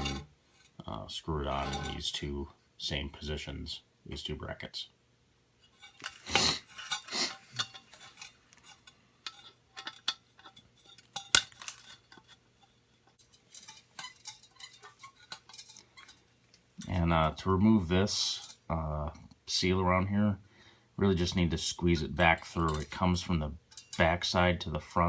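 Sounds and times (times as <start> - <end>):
hand tool clicking on metal screws: 0.0 - 0.2, 5.8 - 12.3, 13.2 - 16.2.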